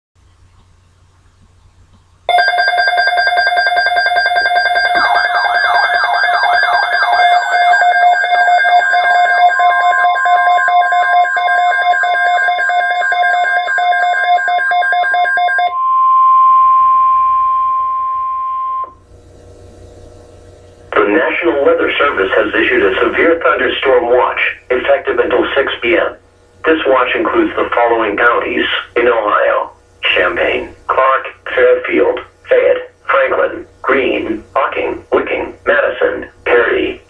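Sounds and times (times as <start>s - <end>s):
steady alert tone: 2.3s - 12.2s
shrill pulsing multi-tone alarm: 2.3s - 19.0s.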